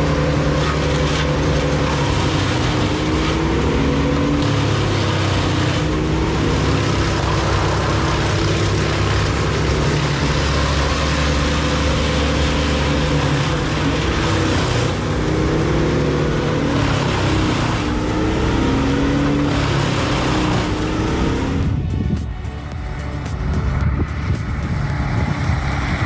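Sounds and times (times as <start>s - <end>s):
heavy machine engine running: 0.0s - 26.0s.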